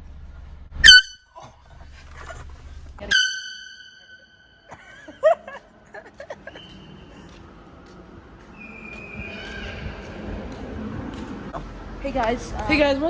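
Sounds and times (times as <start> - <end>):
air horn blast: 0.8 - 1.2, 3.0 - 4.8.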